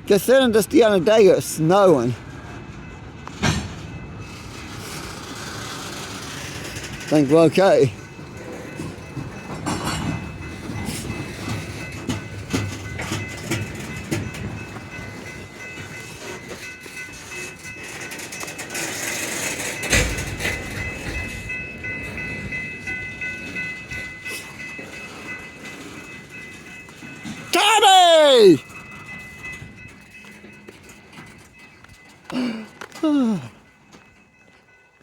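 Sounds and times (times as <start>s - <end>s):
train wheels clattering over rail joints: 2.3s - 24.0s.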